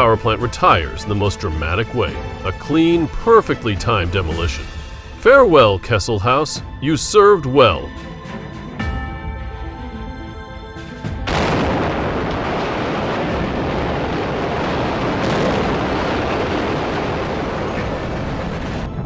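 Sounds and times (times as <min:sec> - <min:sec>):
background music: 0:00.0 - 0:13.9
loud explosion boom: 0:11.3 - 0:19.0
rumble of structure collapsing: 0:11.3 - 0:19.0.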